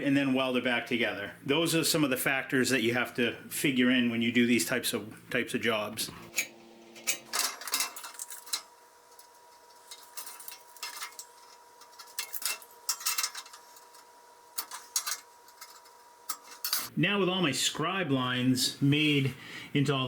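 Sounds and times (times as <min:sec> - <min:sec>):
faint steady hum: 0:00.0 - 0:20.0
awl scraping steel: 0:06.1 - 0:16.9.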